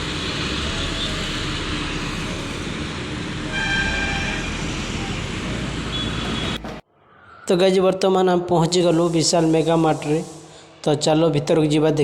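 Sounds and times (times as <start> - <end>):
road traffic noise: 0.0 - 6.8
vehicle horn: 0.7 - 2.6, 3.4 - 6.8.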